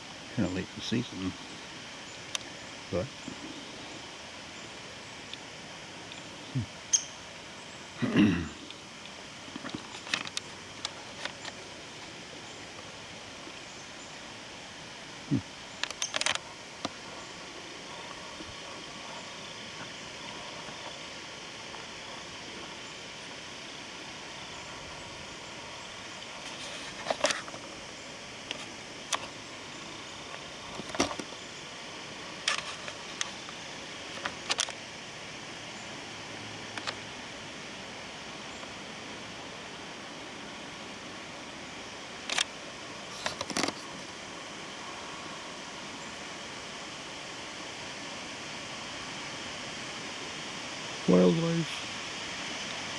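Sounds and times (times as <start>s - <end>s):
wind hiss: 0.0s - 52.9s.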